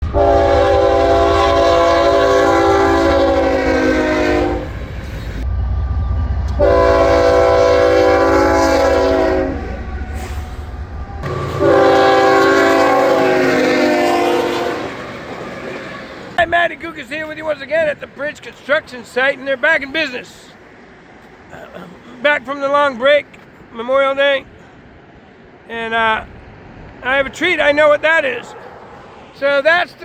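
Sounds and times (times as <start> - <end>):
locomotive air horn blasts: 0.0 - 4.9, 6.5 - 15.1
low rumble: 4.6 - 8.5, 9.5 - 11.7.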